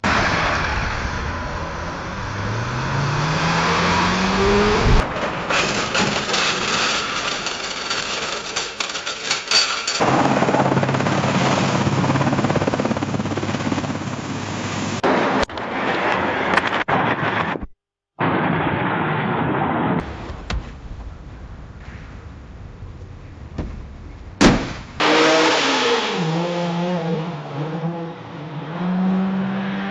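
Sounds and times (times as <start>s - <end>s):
car engine revving: 0.0s - 5.2s, 25.0s - 29.9s
noisy engine-like drone: 0.0s - 6.4s, 10.0s - 15.8s
car crash impact: 4.4s - 8.3s, 23.5s - 25.3s
debris clattering: 5.0s - 10.4s.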